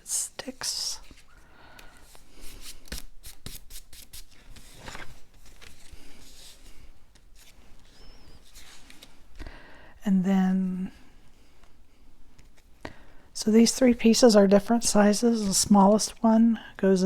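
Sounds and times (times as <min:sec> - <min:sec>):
paper rubbing and rustling: 0:02.2 - 0:09.2.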